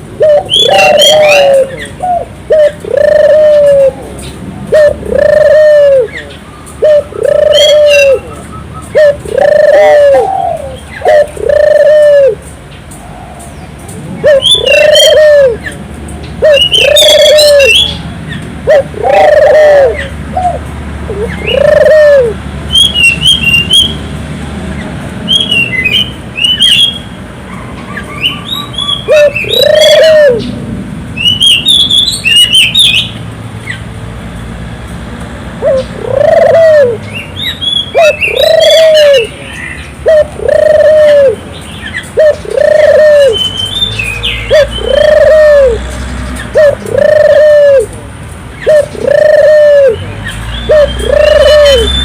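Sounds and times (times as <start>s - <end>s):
doves cooing: 0.0s - 15.8s, 16.4s - 18.0s, 18.6s - 22.9s, 27.5s - 30.6s, 35.6s - 37.0s, 37.9s - 41.4s, 42.0s - 43.5s, 44.5s - 50.1s, 50.7s - 52.0s
small birds chirping: 35.6s - 52.0s.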